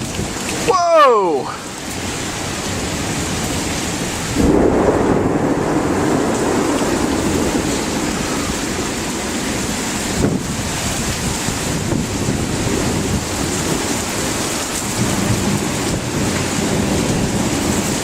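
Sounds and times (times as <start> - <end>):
gusting wind: 0.0 - 18.0
heavy rain: 0.0 - 18.0
thunder rumbling: 1.5 - 18.0.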